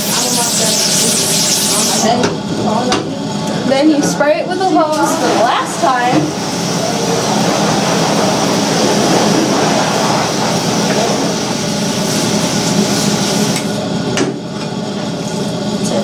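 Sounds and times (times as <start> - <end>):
hose spraying water: 0.0 - 2.2, 4.8 - 13.8.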